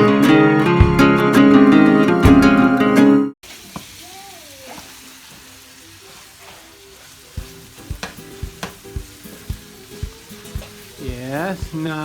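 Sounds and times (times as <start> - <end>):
low thumping beat: 0.6 - 1.5, 2.1 - 2.8, 7.4 - 12.0
food sizzling in a pan: 3.4 - 12.0.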